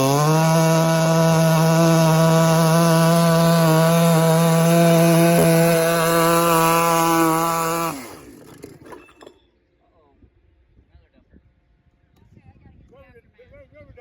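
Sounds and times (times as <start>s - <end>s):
chainsaw engine at high revs: 0.0s - 9.2s.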